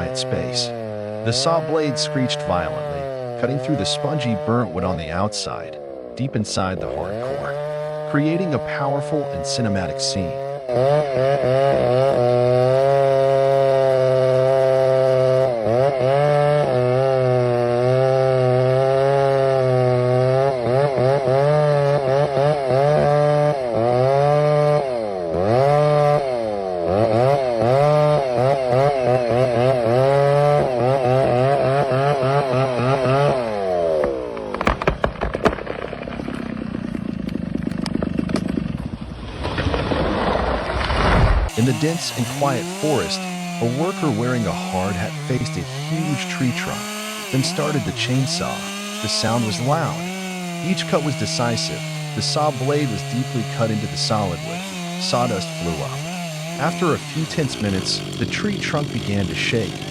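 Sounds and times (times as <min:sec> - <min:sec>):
chainsaw cutting wood: 0:00.0 - 0:59.9
sharp cracks and knocks: 0:34.0 - 0:41.5.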